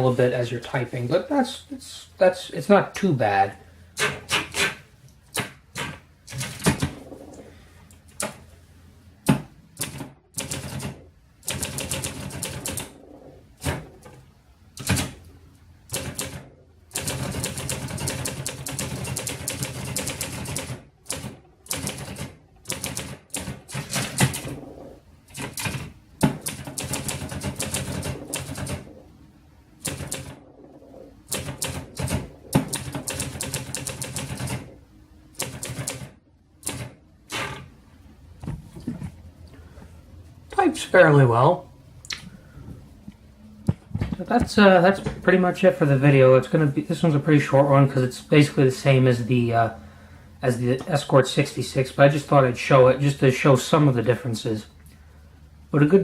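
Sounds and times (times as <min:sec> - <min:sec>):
manual typewriter keystrokes: 0:09.8 - 0:12.9, 0:14.8 - 0:15.2, 0:15.9 - 0:24.6, 0:25.3 - 0:28.9, 0:31.3 - 0:34.7, 0:35.3 - 0:37.0.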